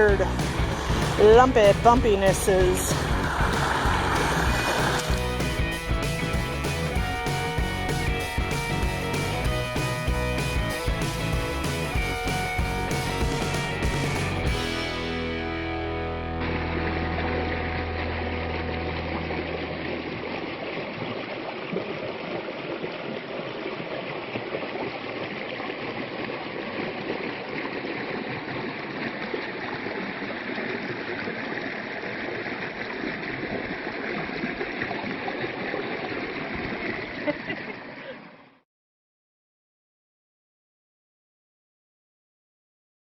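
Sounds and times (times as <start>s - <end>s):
low hum: 0.0s - 21.2s
creek water rushing: 0.0s - 38.3s.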